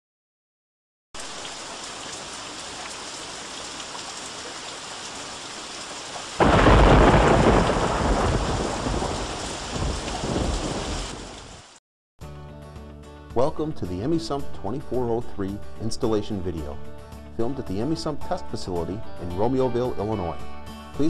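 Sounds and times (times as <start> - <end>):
steady rain: 1.2 - 11.8
thunder clap rumbling: 6.4 - 11.7.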